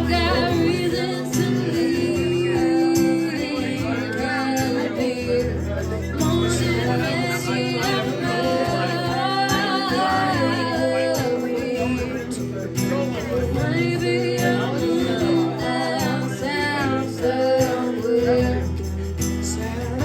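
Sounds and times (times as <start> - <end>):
guitar accompaniment: 0.0 - 20.0
person singing: 0.0 - 20.0.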